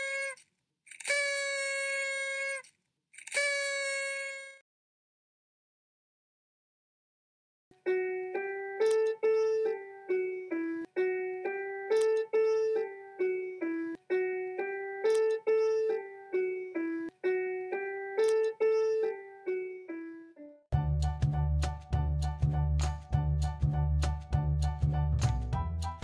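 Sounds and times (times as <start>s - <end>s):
keyboard playing simple melody: 7.7s - 26.0s.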